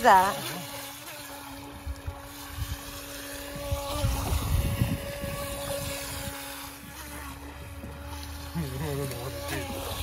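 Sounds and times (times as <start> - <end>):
electric motor whining: 0.0 - 10.0
wind rumbling on microphone: 1.6 - 8.1.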